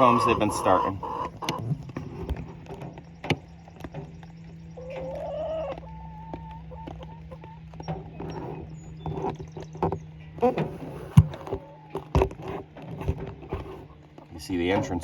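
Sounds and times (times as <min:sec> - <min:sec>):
hen calling: 0:00.0 - 0:02.3, 0:04.6 - 0:09.4
steady low hum: 0:00.0 - 0:15.0.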